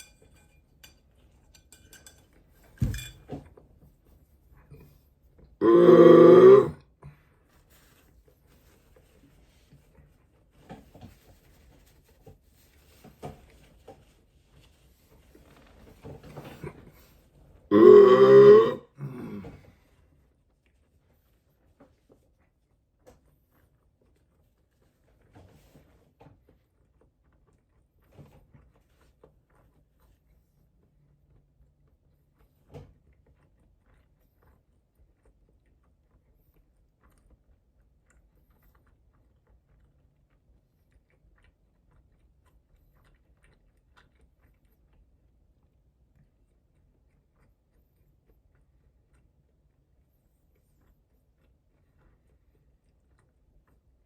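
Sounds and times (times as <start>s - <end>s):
faint chewing: 0.0s - 54.0s
person belching: 5.6s - 6.8s, 17.7s - 19.5s.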